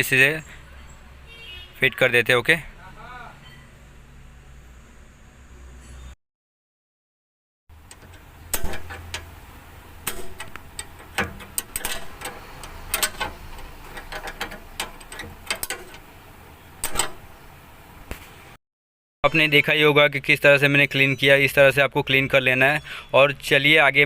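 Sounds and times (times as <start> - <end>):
hand tool clicking on metal: 7.8 - 9.4, 10.0 - 16.1, 16.8 - 17.3.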